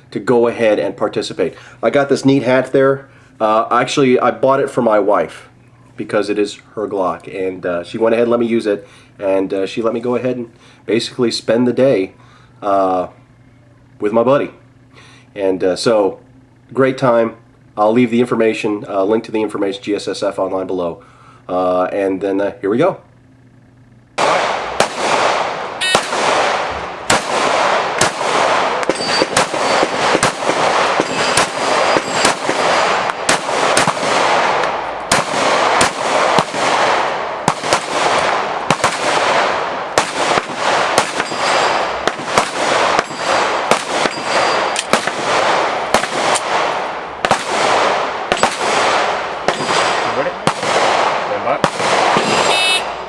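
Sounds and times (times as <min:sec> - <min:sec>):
pistol shots: 0:24.2 - 0:53.0.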